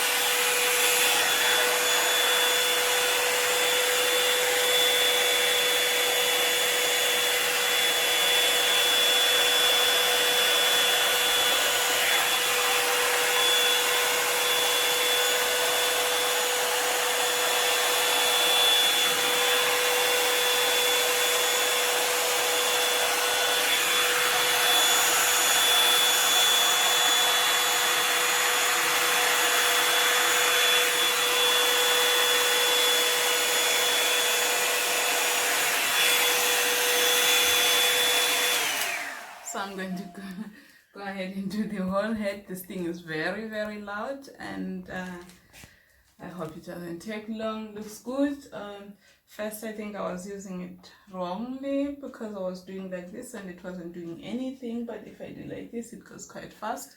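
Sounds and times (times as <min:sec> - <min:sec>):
hot-air brush blowing: 0:00.0 - 0:40.9.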